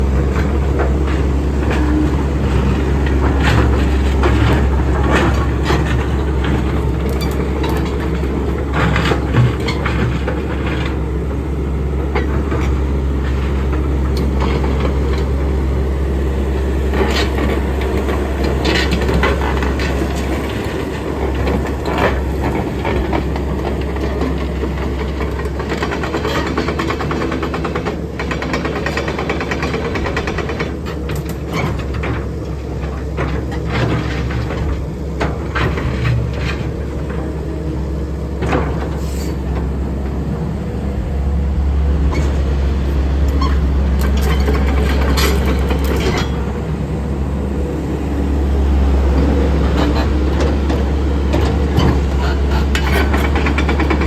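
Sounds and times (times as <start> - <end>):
diesel engine running: 0.0 - 54.0
knocks and clanks: 49.2 - 54.0.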